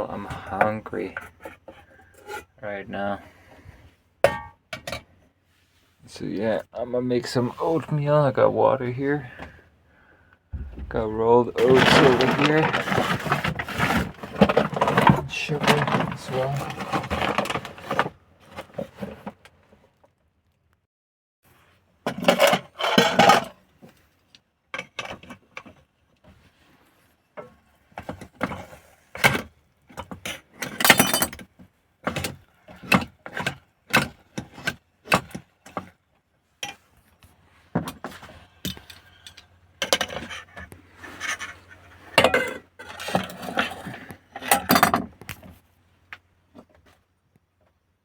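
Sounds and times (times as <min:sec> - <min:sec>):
food packages rustling: 0:10.6 - 0:19.4
camp cooking gear clinking: 0:11.6 - 0:17.8.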